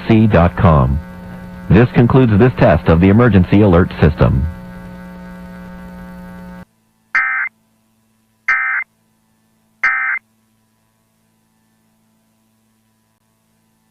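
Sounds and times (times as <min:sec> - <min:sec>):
shrill digital data warble: 0:07.2 - 0:07.5, 0:08.5 - 0:08.9, 0:09.8 - 0:10.2.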